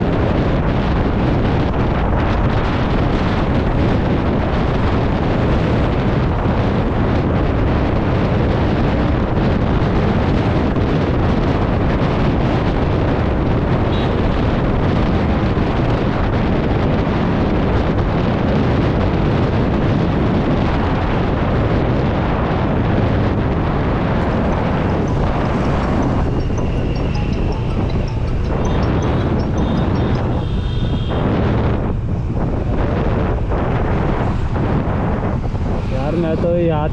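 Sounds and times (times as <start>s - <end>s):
wind rush on microphone: 0.0s - 36.9s
scooter riding noise: 22.6s - 36.5s.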